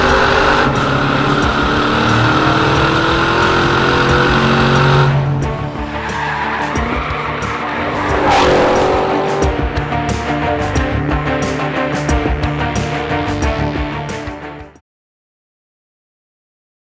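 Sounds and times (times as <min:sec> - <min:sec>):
tyres squealing: 0:00.0 - 0:10.2
rising sweep: 0:00.0 - 0:10.8
car engine running hard: 0:00.0 - 0:14.0
music: 0:00.0 - 0:14.8.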